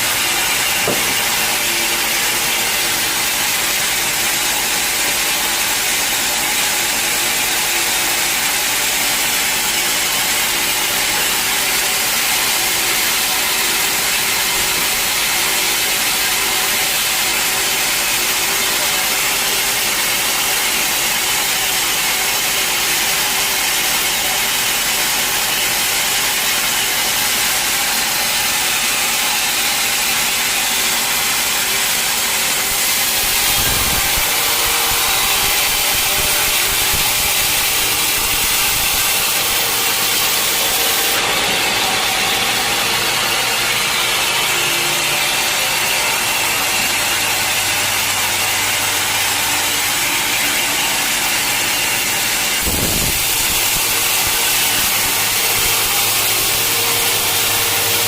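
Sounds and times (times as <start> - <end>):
saw blade cutting log: 0.0 - 58.0
motor running: 30.1 - 58.0.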